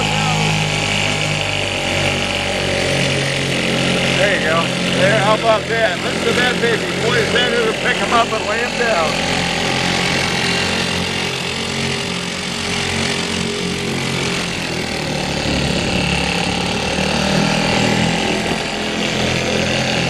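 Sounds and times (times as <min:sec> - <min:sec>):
outboard motor running: 0:00.0 - 0:20.0.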